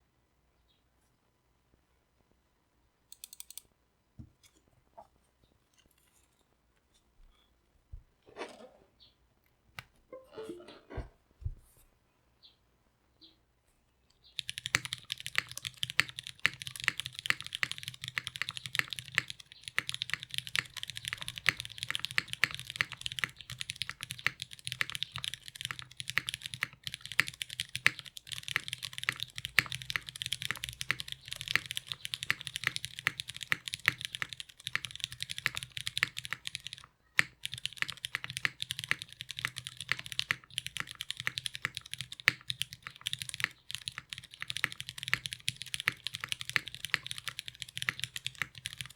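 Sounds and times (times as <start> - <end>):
fast typing on mechanical keyboard: 14.4 - 48.9.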